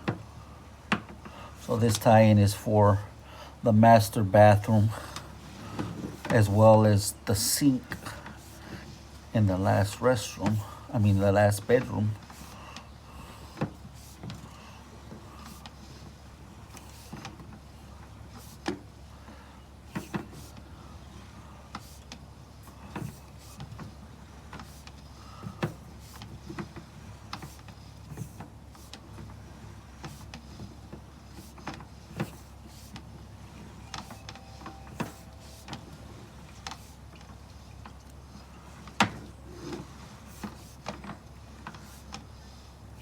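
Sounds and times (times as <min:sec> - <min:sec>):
low hum: 0:33.3 - 0:38.6.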